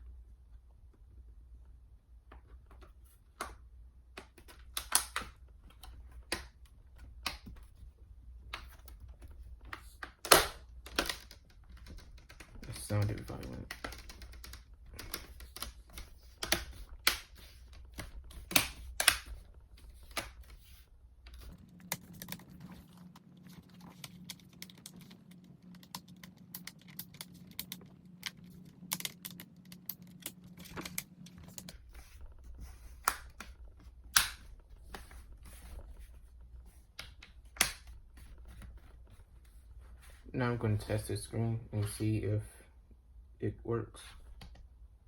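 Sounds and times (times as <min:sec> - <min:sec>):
faint low hum: 0:00.0 - 0:45.0
plastic clips snapping: 0:04.2 - 0:06.6, 0:09.7 - 0:11.6, 0:12.6 - 0:20.5, 0:34.1 - 0:34.5, 0:37.0 - 0:38.0.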